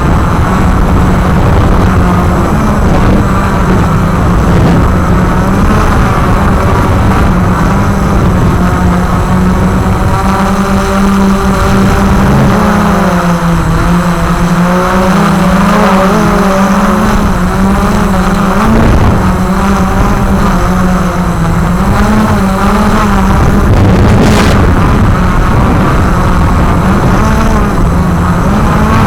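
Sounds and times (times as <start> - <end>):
drone propellers buzzing: 0.0 - 29.0.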